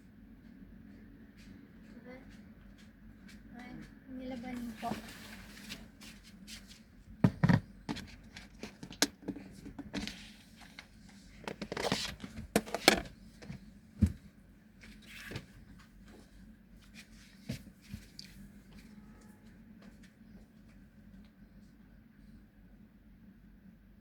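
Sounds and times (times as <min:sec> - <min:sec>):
faint steady hum: 0:00.0 - 0:24.0
knocks and clicks of kitchen things: 0:07.2 - 0:10.0.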